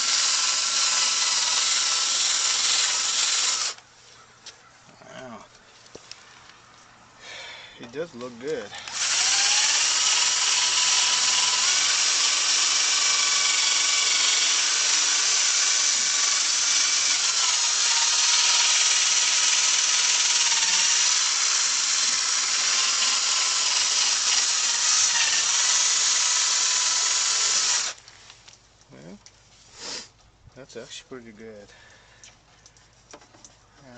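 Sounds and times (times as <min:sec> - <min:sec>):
electric drill buffing plastic: 0:00.0 - 0:03.8, 0:08.8 - 0:28.0.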